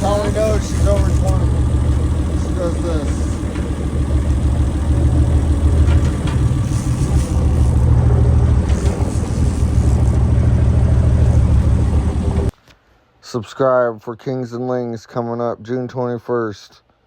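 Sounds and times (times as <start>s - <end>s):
boat engine droning: 0.0s - 12.5s.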